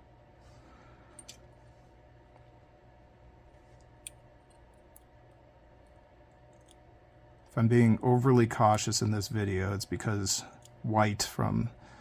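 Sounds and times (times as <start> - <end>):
faint clicks of small parts: 1.1 - 1.5, 3.5 - 5.1, 5.8 - 7.6.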